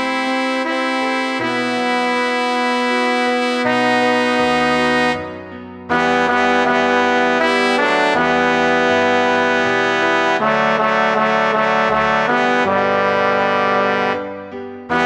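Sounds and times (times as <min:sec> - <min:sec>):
synthesized brass chords: 0:00.0 - 0:15.0.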